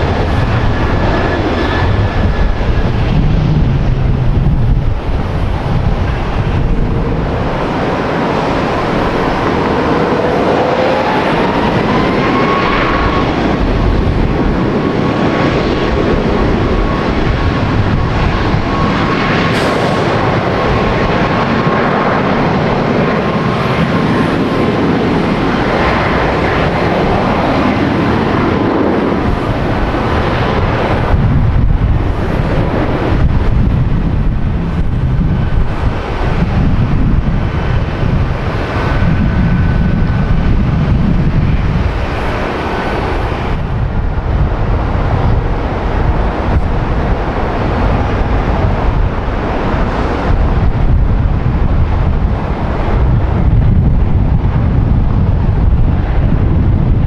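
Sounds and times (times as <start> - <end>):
thin engine whine: 0.0 - 31.4
deep engine rumble: 0.0 - 57.0
jet engines rushing: 0.0 - 57.0.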